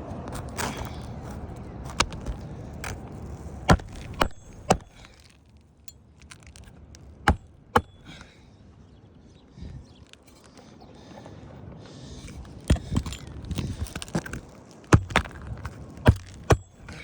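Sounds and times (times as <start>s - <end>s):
hammer striking shingles: 0.4s - 5.4s, 6.2s - 8.3s, 12.6s - 17.0s.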